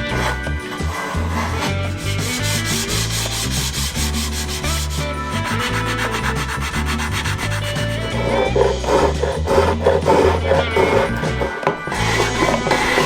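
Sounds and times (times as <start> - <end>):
background music: 0.0 - 13.0
sandpaper rubbing on wood: 0.0 - 13.0.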